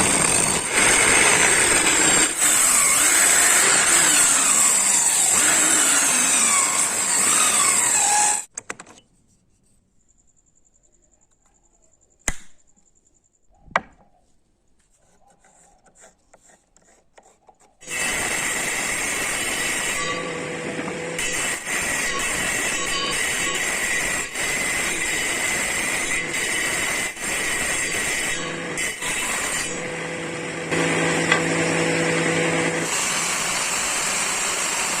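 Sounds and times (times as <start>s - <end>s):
power tool cutting wood: 0.0s - 8.5s, 17.8s - 35.0s.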